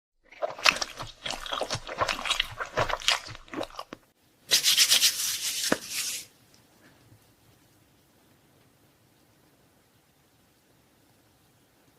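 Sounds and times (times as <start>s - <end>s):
crisp crunching while eating: 0.3s - 4.0s.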